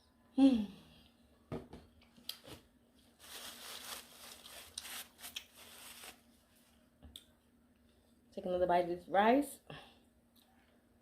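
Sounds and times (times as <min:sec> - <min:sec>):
crinkly rustling: 0:02.4 - 0:06.8.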